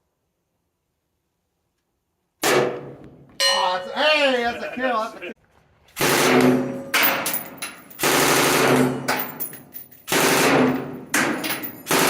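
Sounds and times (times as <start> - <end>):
machine gun firing bursts: 6.0 - 6.6, 8.0 - 9.1, 10.1 - 12.0.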